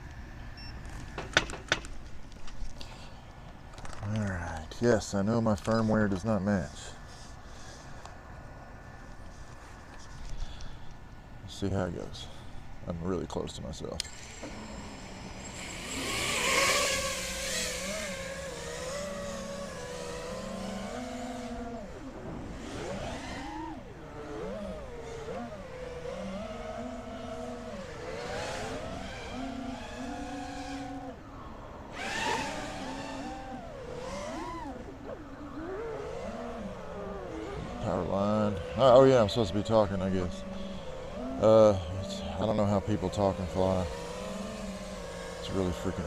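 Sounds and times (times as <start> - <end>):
drone motors whining: 14.0 - 46.0.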